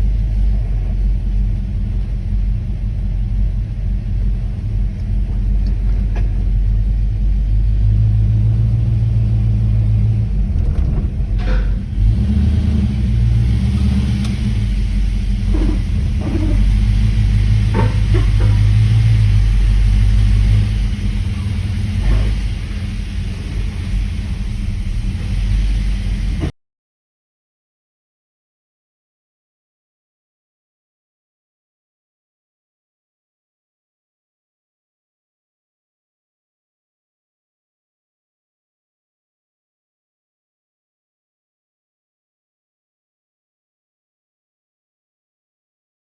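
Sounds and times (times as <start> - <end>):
car engine rumbling: 0.0 - 26.5.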